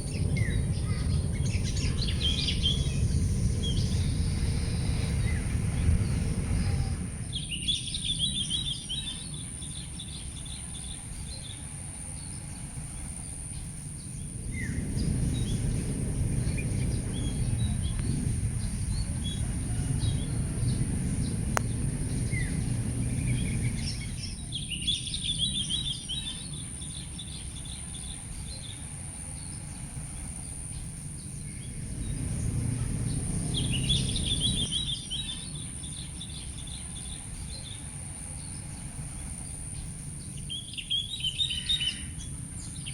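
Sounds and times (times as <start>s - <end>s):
low rumble: 0.0s - 42.9s
songbird twittering: 0.0s - 42.9s.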